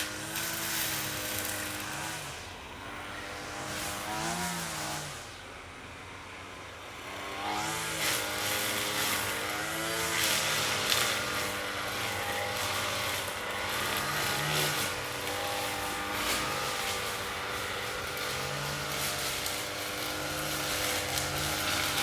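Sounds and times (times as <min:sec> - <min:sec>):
lawn mower engine running: 0:00.0 - 0:22.0.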